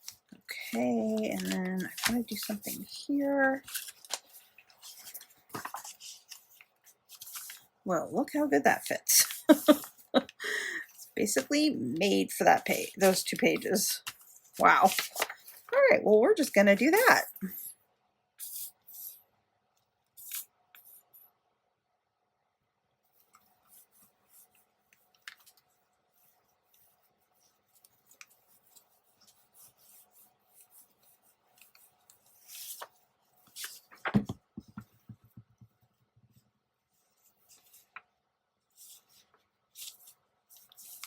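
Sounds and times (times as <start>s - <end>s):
scissors snipping paper: 0.0s - 2.8s
paper rustling: 0.0s - 17.5s, 23.2s - 35.3s, 36.3s - 38.1s, 38.7s - 41.0s.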